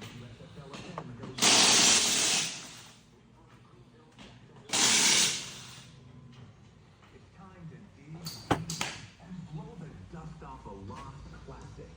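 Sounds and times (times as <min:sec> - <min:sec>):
pressurised nozzle air blasts: 0:01.4 - 0:02.9, 0:04.7 - 0:05.9.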